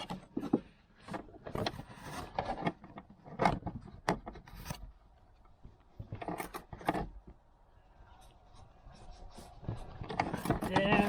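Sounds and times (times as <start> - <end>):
seat belt hardware clicking and scraping: 6.0 - 7.3.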